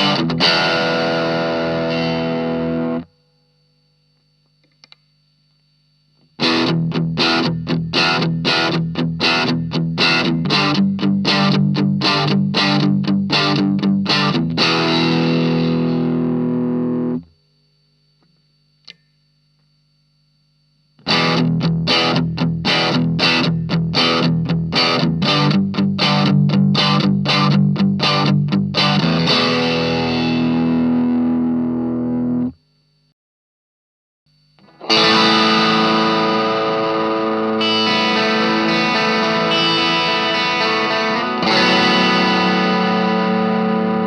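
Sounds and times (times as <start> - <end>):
overdriven electric guitar chords: 0.0 - 3.7, 6.2 - 17.4, 21.0 - 32.6, 34.5 - 44.0
low amp hum: 0.0 - 33.2, 34.3 - 44.0.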